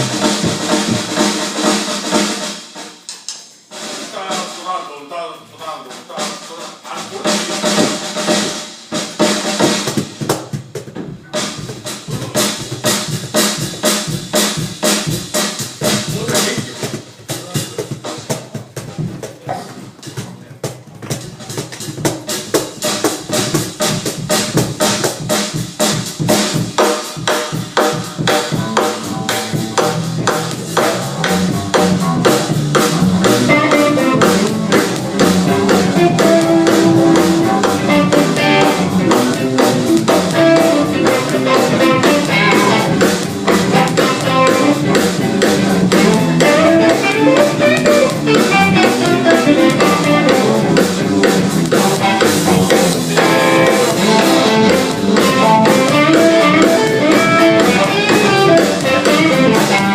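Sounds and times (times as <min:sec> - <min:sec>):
drum kit beat: 0:00.0 - 0:59.9
guitar playing: 0:27.9 - 0:59.9.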